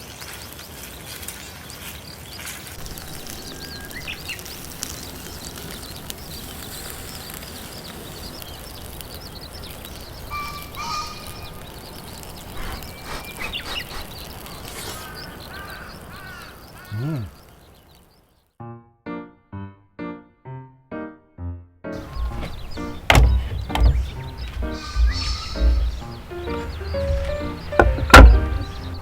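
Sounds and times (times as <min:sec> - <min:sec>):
background hiss: 0:02.8 - 0:18.3, 0:22.0 - 0:29.0
birds chirping and calling: 0:02.8 - 0:18.3, 0:22.0 - 0:29.0.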